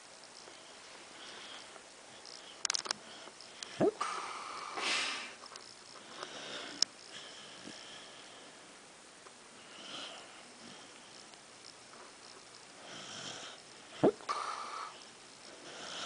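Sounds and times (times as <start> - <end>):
sharp clicks: 2.6 - 3.0
dog snoring through nose: 9.6 - 11.2, 12.0 - 16.0.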